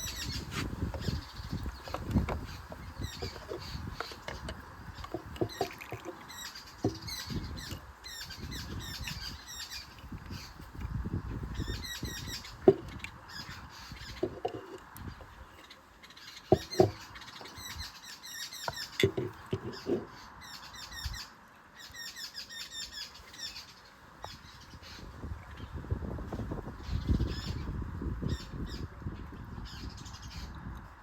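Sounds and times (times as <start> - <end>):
small birds chirping: 0.0 - 30.8
sharp handling knocks: 0.5 - 7.8, 12.5 - 13.1, 14.1 - 14.8, 16.5 - 17.6, 18.7 - 20.1.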